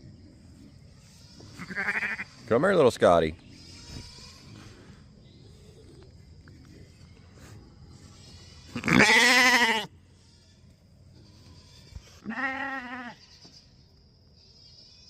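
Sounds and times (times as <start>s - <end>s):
sheep bleating: 1.2s - 2.5s, 8.1s - 13.7s.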